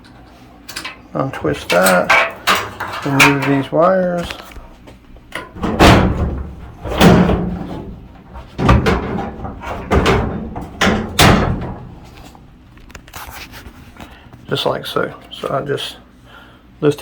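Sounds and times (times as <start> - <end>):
dryer part clunking and knocking: 0.7 - 4.5, 5.2 - 12.6.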